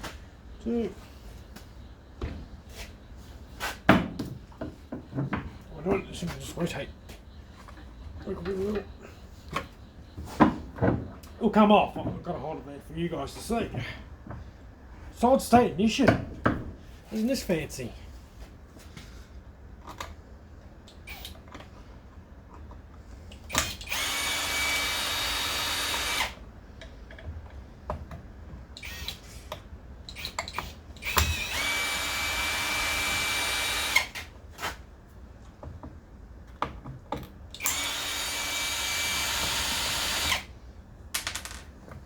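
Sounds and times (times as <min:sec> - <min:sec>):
electric drill running: 0:23.6 - 0:26.4, 0:31.0 - 0:34.2, 0:37.6 - 0:40.5.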